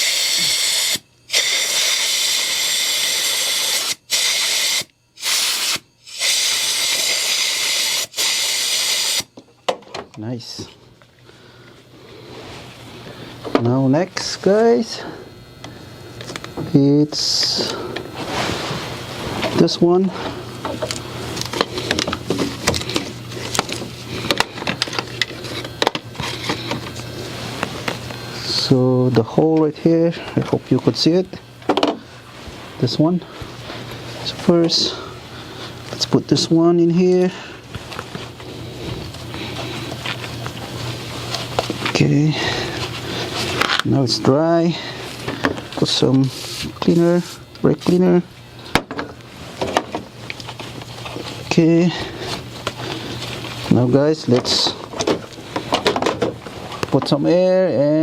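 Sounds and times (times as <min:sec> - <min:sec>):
air blow gun hissing: 0:00.0 - 0:09.3
steady low hum: 0:00.0 - 0:58.0.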